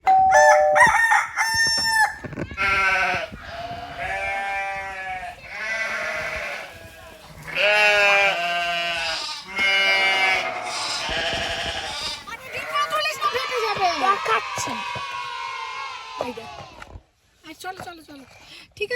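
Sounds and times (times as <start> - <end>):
rooster crowing: 0.3 - 2.3
goats bleating: 2.5 - 16.8.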